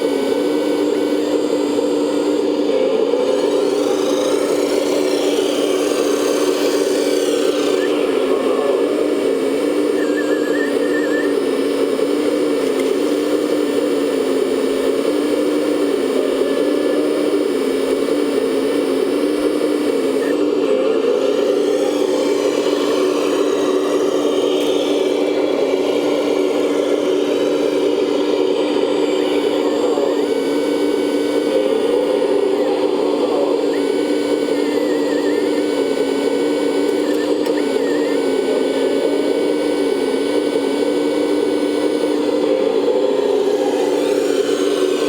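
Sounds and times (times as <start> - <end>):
toy motor humming: 3.2 - 11.0.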